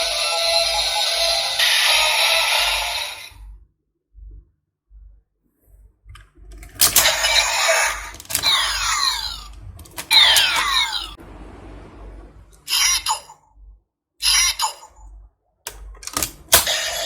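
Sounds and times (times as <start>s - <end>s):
toy belt clicks: 6.6s - 11.1s, 14.2s - 15.0s, 15.7s - 17.0s.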